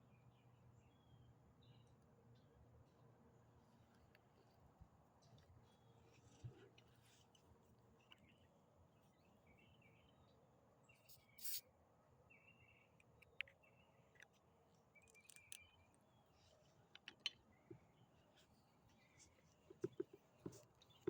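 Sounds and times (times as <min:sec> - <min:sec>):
faint bird chirps: 0:05.2 - 0:21.0
small clicks: 0:13.0 - 0:14.4, 0:15.0 - 0:16.0, 0:16.9 - 0:17.4.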